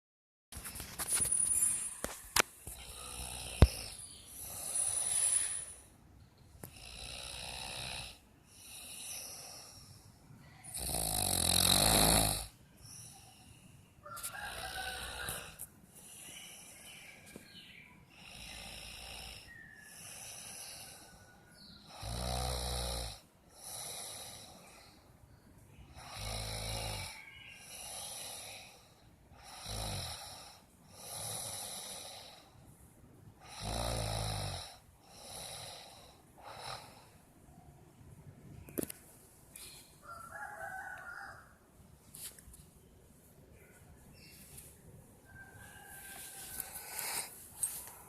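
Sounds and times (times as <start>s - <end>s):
person snoring: 2.7s - 5.9s, 6.6s - 13.2s, 14.3s - 17.0s, 18.1s - 24.9s, 25.9s - 32.6s, 33.4s - 37.1s, 46.6s - 48.0s.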